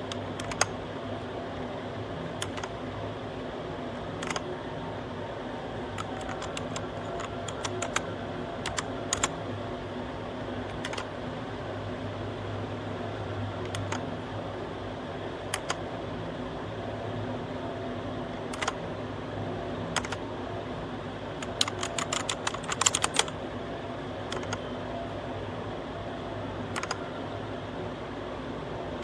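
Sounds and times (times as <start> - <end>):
mechanical keyboard typing: 0.0 - 0.8, 2.4 - 2.8, 4.2 - 4.5, 5.8 - 9.4, 10.7 - 11.1, 13.6 - 14.0, 15.5 - 15.8, 18.5 - 18.8, 19.9 - 20.2, 21.4 - 23.4, 24.3 - 24.6, 26.7 - 27.1
steady low hum: 0.0 - 29.0.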